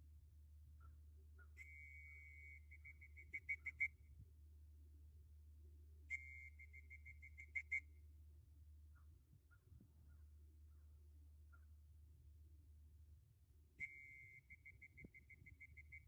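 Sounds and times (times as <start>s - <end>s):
faint low hum: 0.0s - 16.0s
high whistle-like tone and pips: 1.6s - 4.0s, 6.1s - 7.9s, 13.8s - 16.0s.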